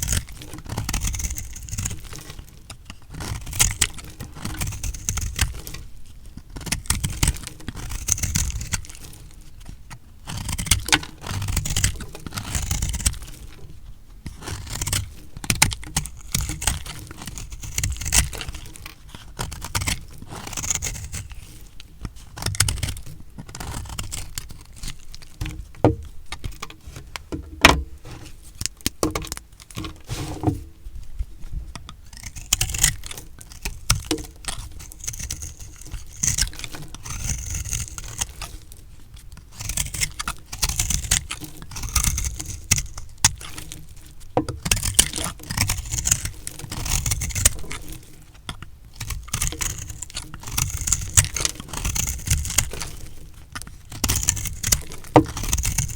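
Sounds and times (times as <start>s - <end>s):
blade crunching through dry soap: 0.0s - 55.9s
sharp knocks: 27.3s - 28.2s, 29.0s - 29.4s.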